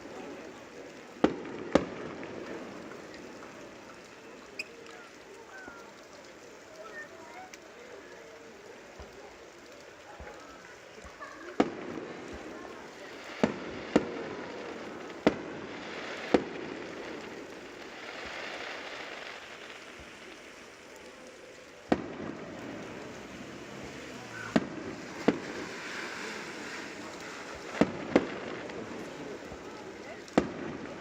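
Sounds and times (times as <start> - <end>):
fireworks bangs: 0.0 - 5.0, 10.2 - 31.0
background rumble: 11.5 - 31.0.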